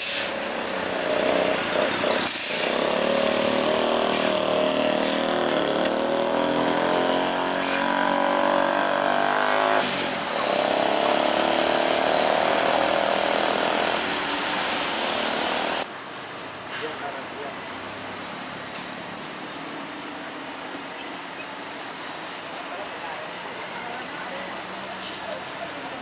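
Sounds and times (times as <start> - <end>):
air brake hisses: 0.0 - 0.4, 2.3 - 2.8, 4.0 - 5.3, 9.8 - 10.2
diesel truck engine running: 0.0 - 15.8.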